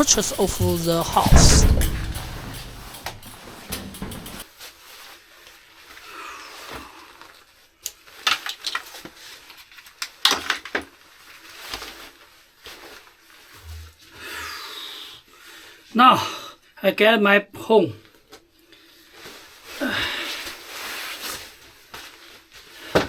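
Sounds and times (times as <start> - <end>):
clicks and knocks from handling: 0.0 - 4.4.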